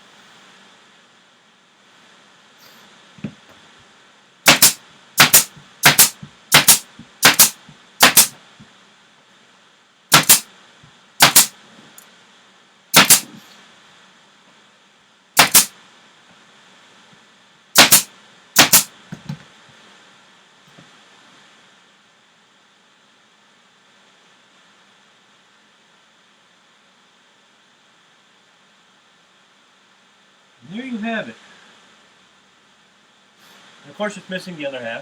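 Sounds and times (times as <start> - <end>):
staple gun firing: 4.5 - 8.3, 10.1 - 10.4, 11.2 - 11.5, 13.0 - 13.3, 15.4 - 15.7, 17.8 - 18.9.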